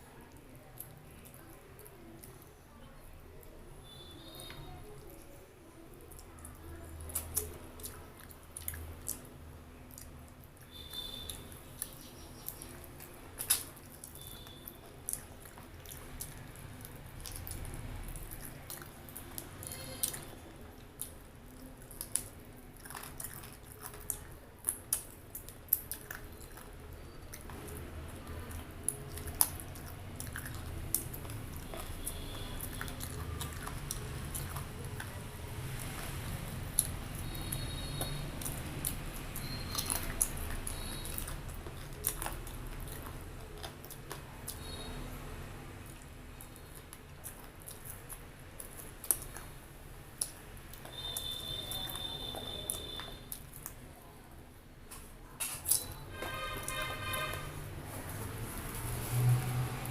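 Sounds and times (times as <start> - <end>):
person chewing food: 3.3 - 54.1, 54.9 - 59.9
wet mouth smacks and clicks: 9.9 - 20.3, 21.8 - 26.7, 45.9 - 53.8.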